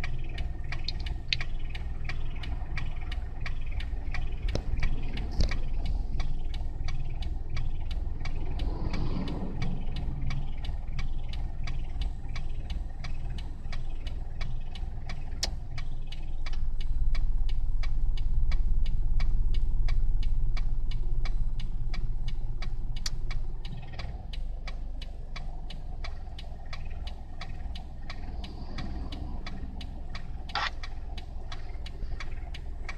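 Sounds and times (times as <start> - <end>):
car engine idling: 0.0 - 32.9
rapid even ticking: 0.0 - 32.9.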